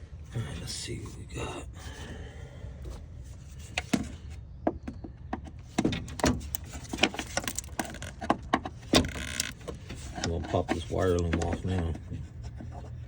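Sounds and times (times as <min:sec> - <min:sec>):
hands clicking on car parts: 0:03.7 - 0:12.7.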